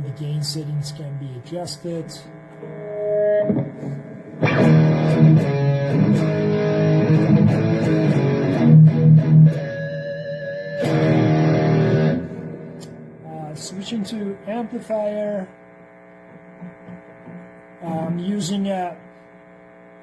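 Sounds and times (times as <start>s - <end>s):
distorted electric guitar chords: 0.0s - 15.2s.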